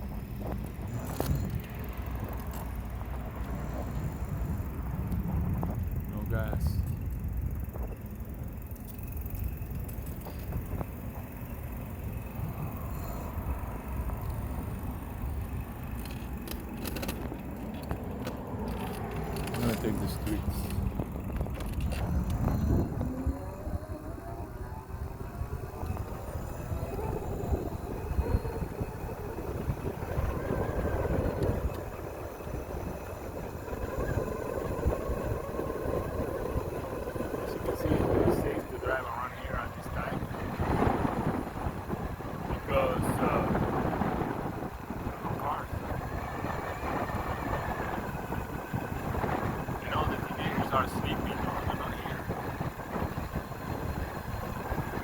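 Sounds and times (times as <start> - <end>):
wind and road noise: 0.0 - 55.0
short clicks and rattles: 15.8 - 22.4.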